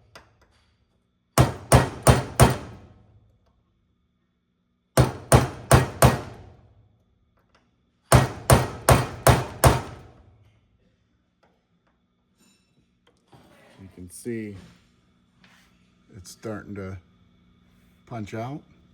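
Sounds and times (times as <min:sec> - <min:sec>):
hammer striking a pin punch: 0:01.4 - 0:03.0, 0:05.0 - 0:06.6, 0:08.1 - 0:10.2.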